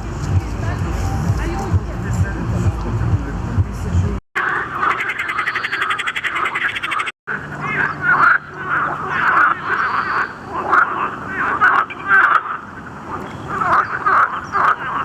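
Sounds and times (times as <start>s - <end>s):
frogs croaking: 4.4s - 15.0s
frogs trilling: 4.4s - 15.0s.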